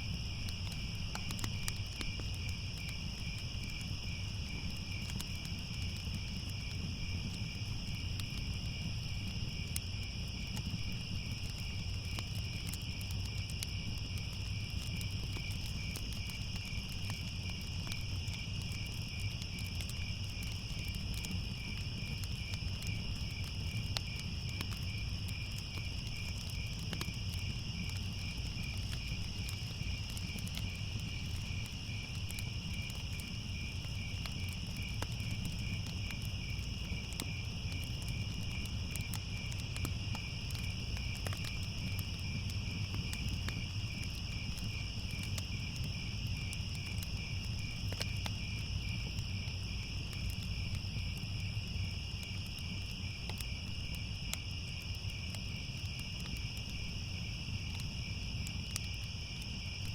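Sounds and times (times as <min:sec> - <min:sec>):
crickets chirping: 0:00.0 - 0:59.9
fire crackling and popping: 0:00.0 - 0:59.9.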